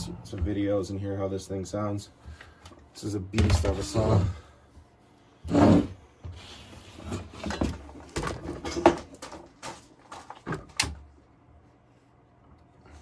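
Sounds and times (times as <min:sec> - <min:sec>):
knocks and clunks of handling: 0:07.1 - 0:11.0.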